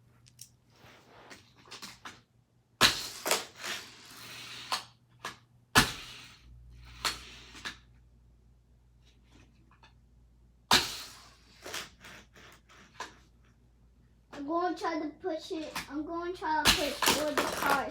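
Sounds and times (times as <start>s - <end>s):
toy car clacking on plastic track: 16.7s - 17.9s
toy car rattling roll: 16.7s - 17.9s.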